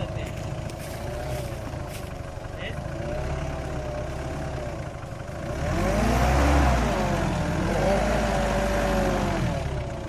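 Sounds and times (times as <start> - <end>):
car engine revving: 2.7 - 10.0.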